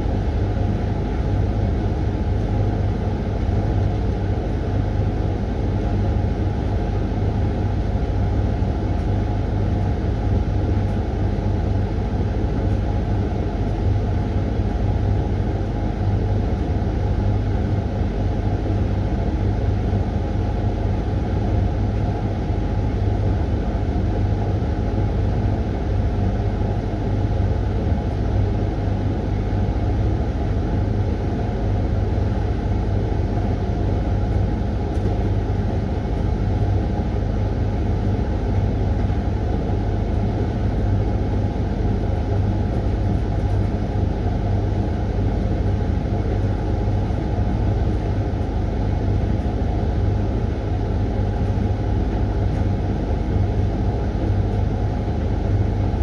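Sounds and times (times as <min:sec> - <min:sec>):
tumble dryer running: 0:00.0 - 0:56.0.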